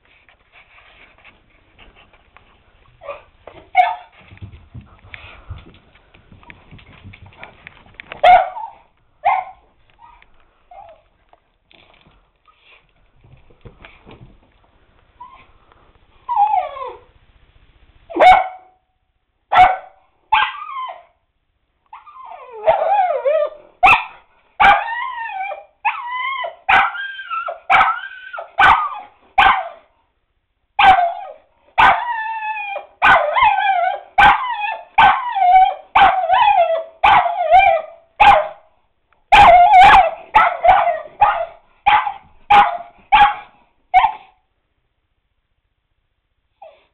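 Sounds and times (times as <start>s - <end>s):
dog barking and yelping: 3.0s - 4.2s, 8.2s - 11.1s, 16.3s - 17.1s, 18.1s - 18.8s, 19.5s - 21.2s, 21.9s - 29.9s, 30.8s - 38.7s, 39.3s - 44.4s.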